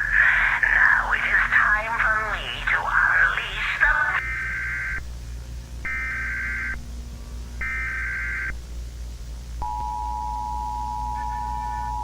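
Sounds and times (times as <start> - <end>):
buzzing digital data tone: 2.0 - 5.0, 5.9 - 6.8, 7.6 - 8.6.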